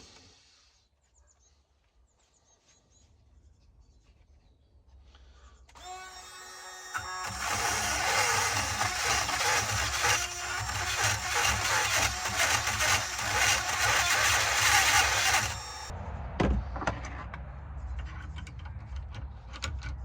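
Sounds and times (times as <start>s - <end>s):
drill bit grinding metal: 5.8s - 15.9s
electric drill whining: 5.8s - 15.9s.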